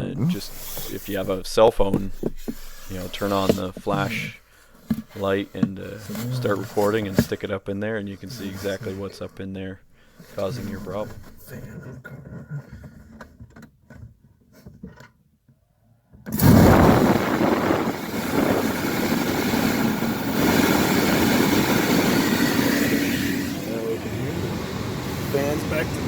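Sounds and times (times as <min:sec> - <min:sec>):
blower fan rushing air: 0:16.3 - 0:26.0.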